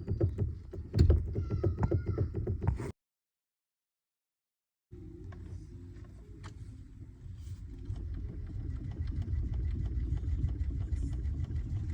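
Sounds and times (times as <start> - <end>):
car engine rumbling: 5.0 - 11.9.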